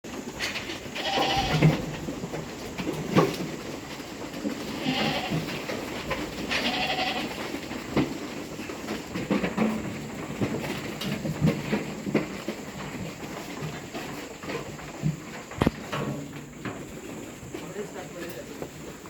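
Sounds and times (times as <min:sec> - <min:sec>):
goats bleating: 0:00.9 - 0:01.9, 0:04.6 - 0:05.7, 0:06.4 - 0:07.6.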